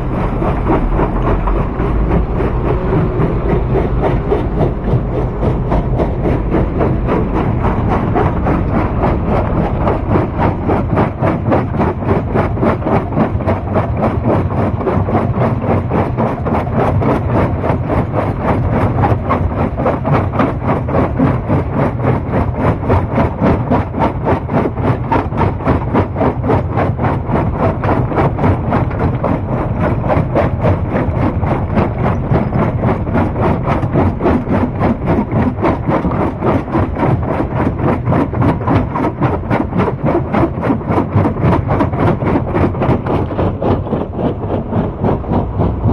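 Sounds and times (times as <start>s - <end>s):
stone-crushing machinery pulsing: 0.0s - 45.9s.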